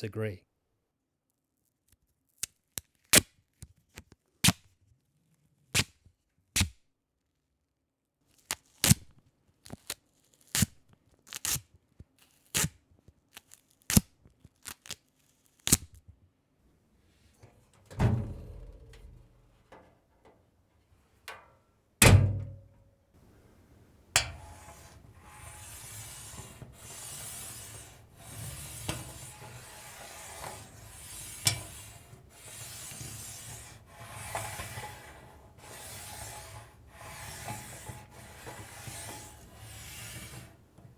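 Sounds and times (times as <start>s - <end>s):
back-and-forth rasping: 24.2s - 40.8s.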